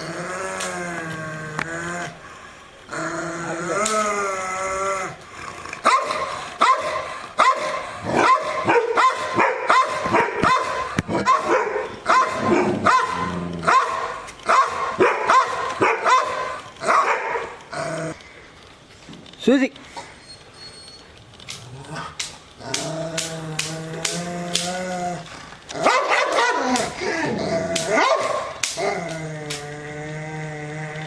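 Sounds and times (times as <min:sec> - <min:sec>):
dog barking: 0:05.8 - 0:17.5, 0:25.8 - 0:26.7, 0:27.9 - 0:28.5
dog whining: 0:19.9 - 0:23.3.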